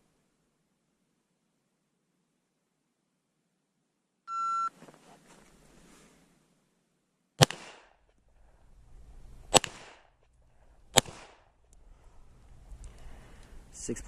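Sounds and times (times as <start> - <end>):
pistol shots with echo: 7.4 - 8.0, 9.5 - 10.1, 10.9 - 11.5.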